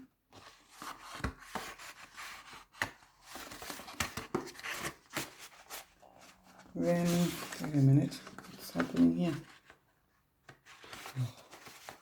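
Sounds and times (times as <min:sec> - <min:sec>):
paper rustling and scraping: 0:00.4 - 0:09.8, 0:10.5 - 0:12.0.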